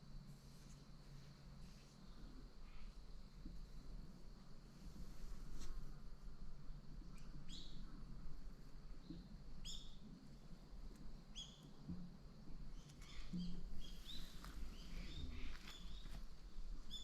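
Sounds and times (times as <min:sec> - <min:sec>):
small bird chirping: 0:07.2 - 0:07.8, 0:09.1 - 0:10.0, 0:11.3 - 0:11.7, 0:12.8 - 0:16.2.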